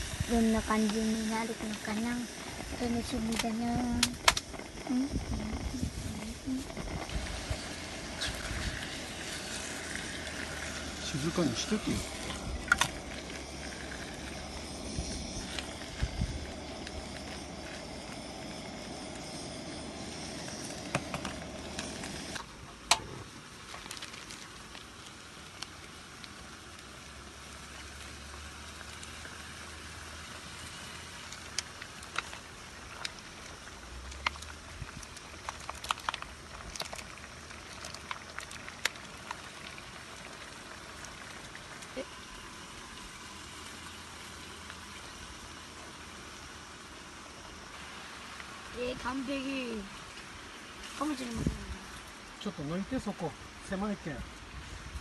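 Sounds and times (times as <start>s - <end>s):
meat sizzling on a grill: 0.0s - 55.0s
small pops: 2.8s - 7.2s, 31.3s - 39.6s.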